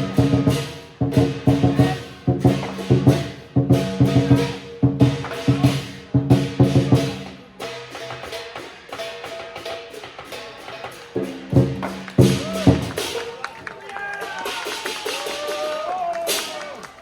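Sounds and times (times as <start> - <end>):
cymbals crashing: 0.0 - 13.4
drum beating: 0.0 - 17.0.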